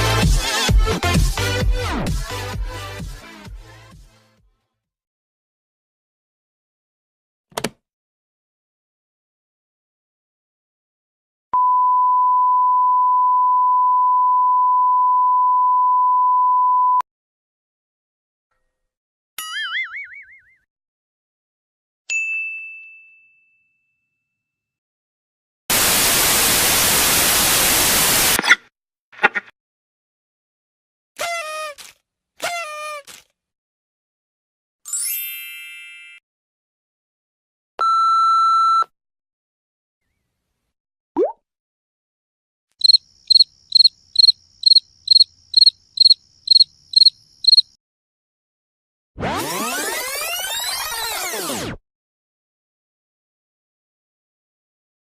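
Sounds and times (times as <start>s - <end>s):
bell-like ding: 22.1s - 24.4s
cricket chirping: 42.8s - 47.8s.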